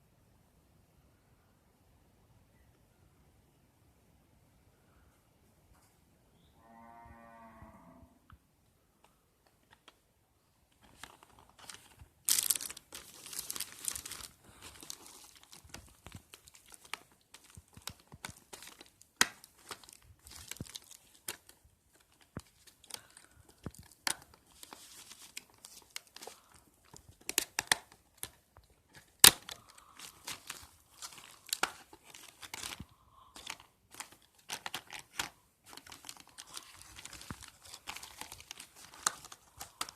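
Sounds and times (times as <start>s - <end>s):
packaging crinkling and tearing: 10.7s - 39.9s.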